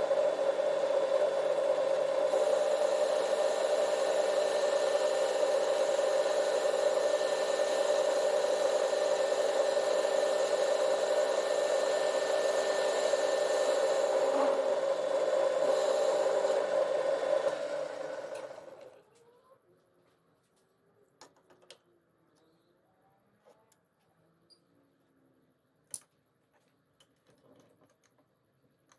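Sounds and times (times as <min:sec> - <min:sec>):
lathe cutting metal: 0:00.0 - 0:18.8
metal lathe motor whine: 0:00.0 - 0:19.0.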